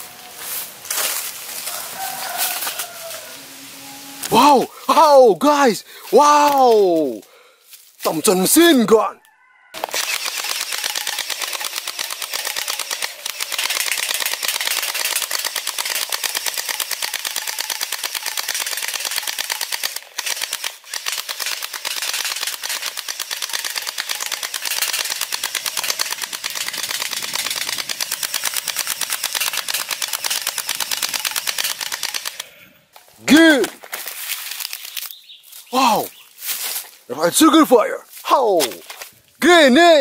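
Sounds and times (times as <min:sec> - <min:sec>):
toy machine gun clicking rattle: 0:09.8 - 0:32.5.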